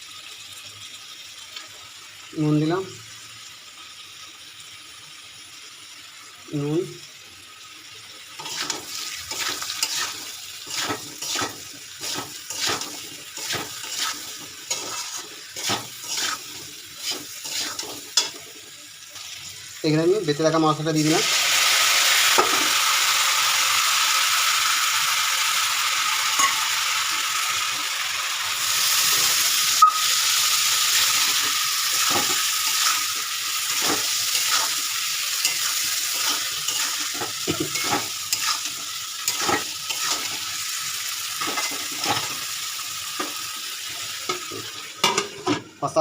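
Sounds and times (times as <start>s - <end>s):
paste sizzling in hot oil: 0.0s - 46.0s
spatula stirring and scraping pan: 8.4s - 18.6s, 30.9s - 42.5s.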